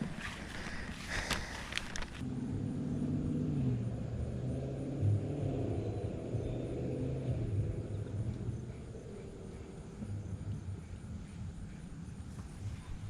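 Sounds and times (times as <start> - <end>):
engine humming: 0.0 - 13.0
light clicks: 1.2 - 2.2.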